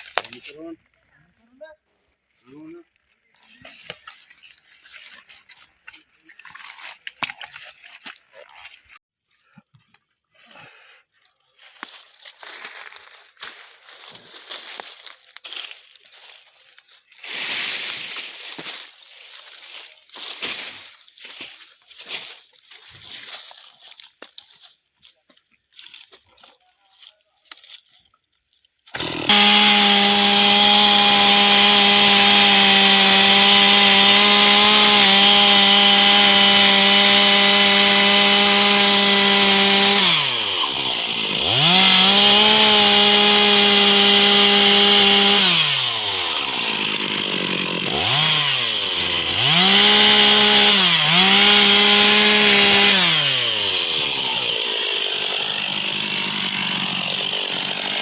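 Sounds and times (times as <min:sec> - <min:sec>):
chainsaw cutting wood: 0:00.0 - 0:00.4, 0:28.9 - 0:58.0.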